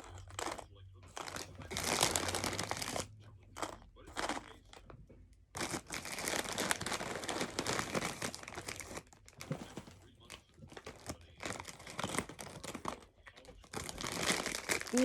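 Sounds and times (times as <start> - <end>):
plastic bags crinkling: 0.0 - 15.0.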